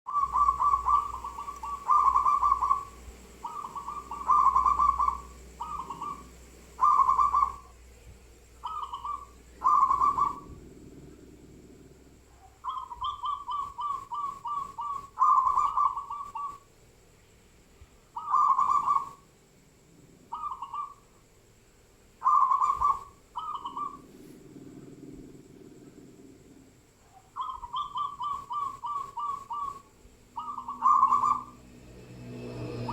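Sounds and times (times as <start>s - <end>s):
bird stuttering calls: 0.1s - 7.8s, 8.6s - 11.0s, 12.4s - 16.7s, 18.2s - 19.2s, 20.3s - 21.1s, 22.2s - 24.9s, 27.1s - 31.8s.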